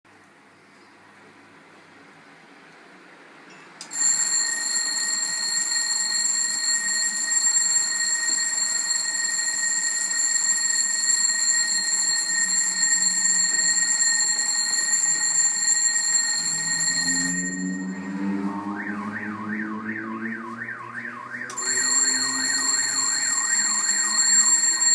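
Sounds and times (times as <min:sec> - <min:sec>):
alarm clock ringing: 0:03.9 - 0:18.4, 0:21.5 - 0:24.9
warbling siren-like wail: 0:16.5 - 0:24.9.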